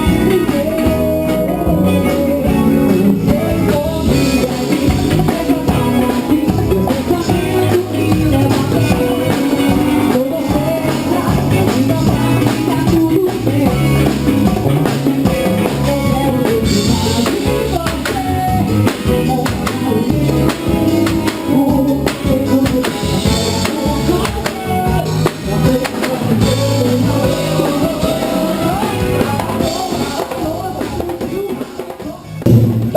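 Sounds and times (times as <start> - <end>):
drum kit beat: 0.0 - 32.9
electric guitar: 0.0 - 32.9
person singing: 0.0 - 32.9.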